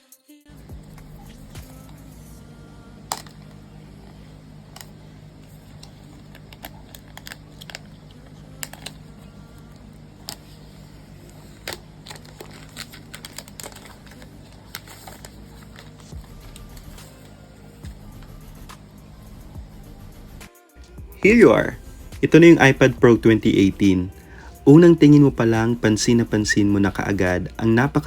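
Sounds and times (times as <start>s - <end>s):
plastic film crackling: 0.9s - 20.0s.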